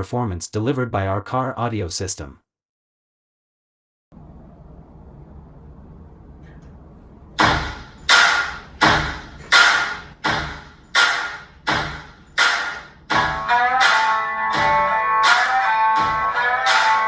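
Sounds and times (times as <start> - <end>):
sharp percussive hits: 7.4 - 17.0.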